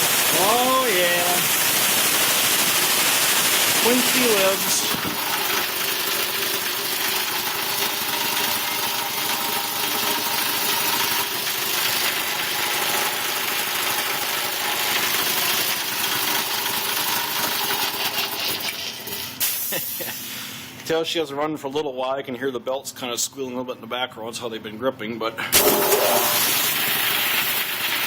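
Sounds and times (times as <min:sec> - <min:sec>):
air compressor running: 0:00.0 - 0:20.8, 0:25.4 - 0:28.0.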